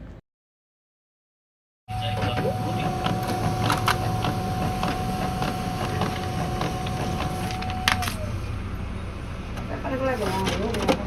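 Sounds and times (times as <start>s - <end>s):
printer clicks: 1.9s - 8.3s
laser printer motor whine: 1.9s - 8.5s.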